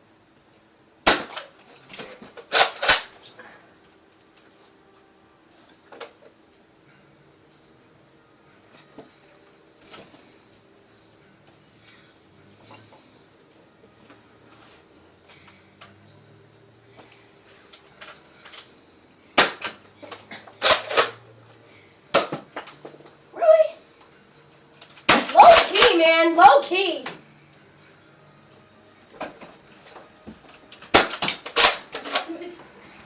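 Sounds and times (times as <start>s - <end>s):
toy blasters firing: 2.5s - 3.2s, 19.4s - 21.2s, 25.1s - 27.2s, 30.9s - 32.5s.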